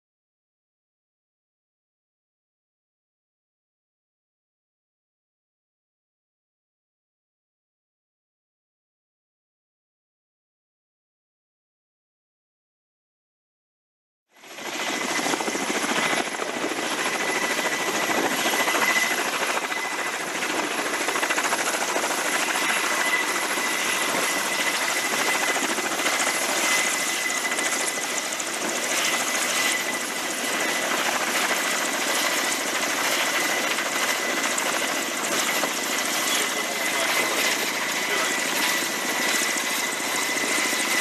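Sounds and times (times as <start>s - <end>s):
helicopter rotor and engine: 14.4s - 41.0s.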